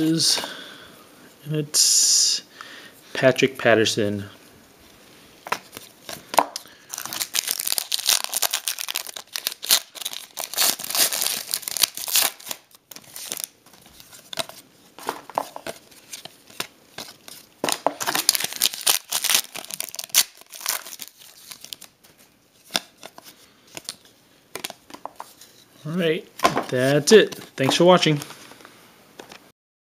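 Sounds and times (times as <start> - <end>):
card pack wrappers crinkling and tearing: 5.6 - 14.6, 15.4 - 22.0.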